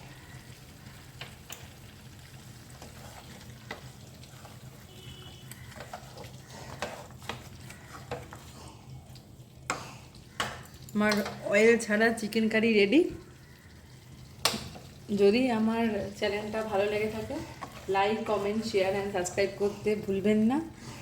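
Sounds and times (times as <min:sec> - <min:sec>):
gravy cooking in a pan: 0:00.0 - 0:21.0
spoon scraping a pan: 0:02.6 - 0:08.8, 0:16.0 - 0:20.4.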